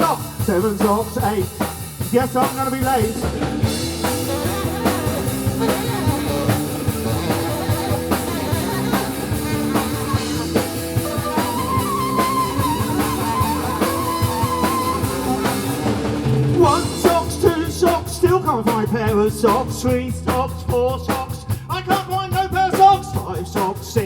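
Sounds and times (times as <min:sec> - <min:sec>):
rock band playing: 0:00.0 - 0:24.0
wavering lead line: 0:03.1 - 0:17.1.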